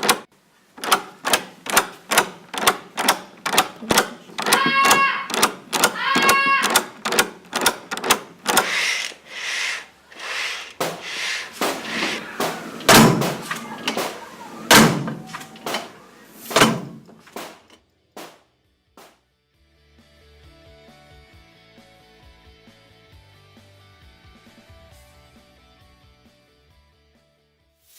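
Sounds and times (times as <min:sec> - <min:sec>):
sharp clicks and knocks: 0:00.0 - 0:18.4
hissing swishes: 0:08.6 - 0:14.8
heavy thuds like door banging: 0:10.8 - 0:18.4.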